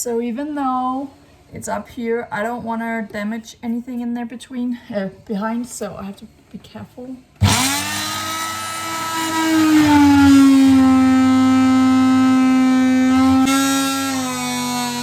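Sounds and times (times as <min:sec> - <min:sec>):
power tool cutting drone: 0:07.4 - 0:15.0.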